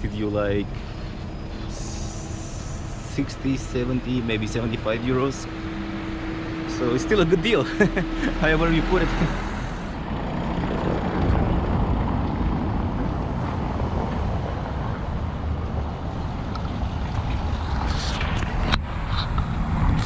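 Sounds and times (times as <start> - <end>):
wind buffeting microphone: 9.3 - 20.0.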